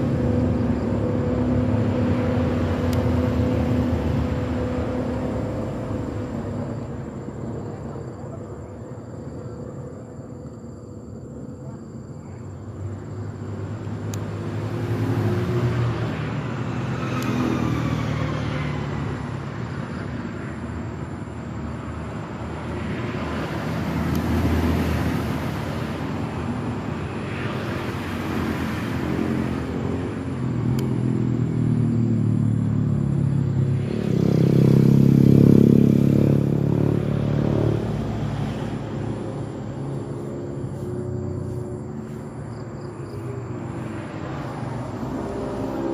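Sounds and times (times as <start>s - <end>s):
vehicles passing: 0.0s - 45.9s.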